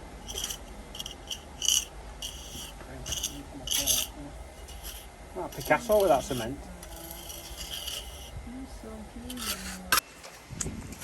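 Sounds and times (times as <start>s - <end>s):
pointing tool scraping mortar: 0.2s - 8.3s, 9.2s - 10.0s.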